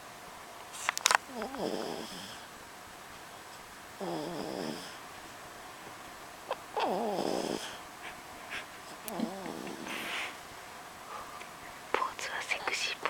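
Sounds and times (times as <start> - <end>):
pet snoring: 1.3 - 2.5, 4.0 - 5.0, 6.5 - 7.8, 9.0 - 10.4.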